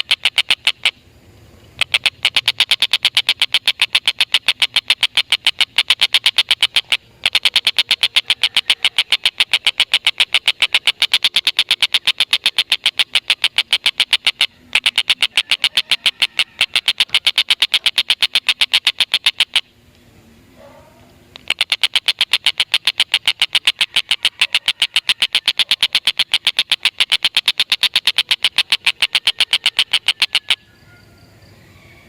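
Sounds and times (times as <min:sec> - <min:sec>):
kingfisher chattering call: 0:01.6 - 0:19.7, 0:21.4 - 0:30.6.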